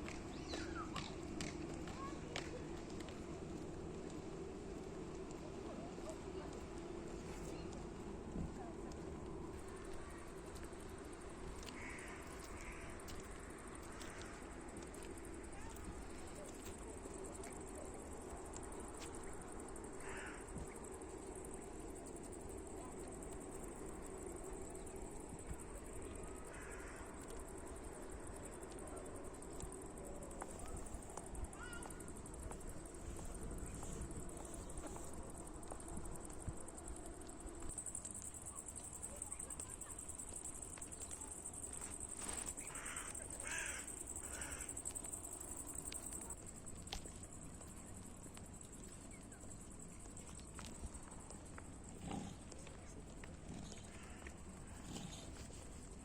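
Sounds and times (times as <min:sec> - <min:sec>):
insects chirring in pulsing trill: 0:09.7 - 0:51.8
harsh cawing bird calls: 0:11.8 - 0:12.8, 0:42.7 - 0:44.7.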